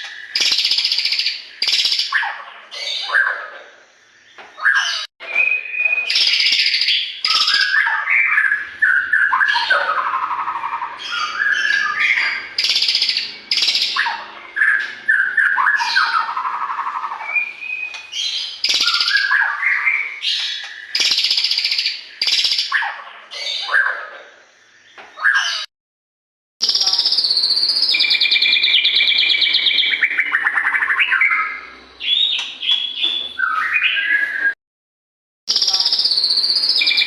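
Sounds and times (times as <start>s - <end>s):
bird singing whistles and scratchy notes: 4.6s - 23.8s, 26.6s - 34.6s, 35.5s - 37.0s.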